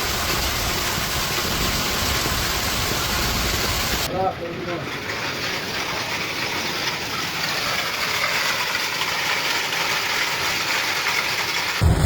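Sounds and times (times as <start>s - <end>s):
heavy rain downpour: 0.0s - 12.0s.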